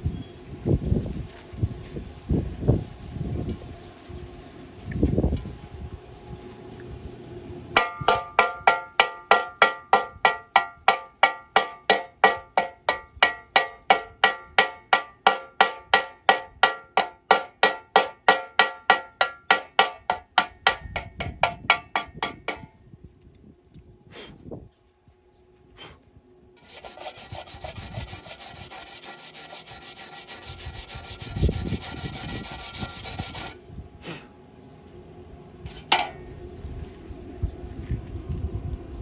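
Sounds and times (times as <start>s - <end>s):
hammer striking steel: 7.8s - 22.8s, 35.7s - 36.3s.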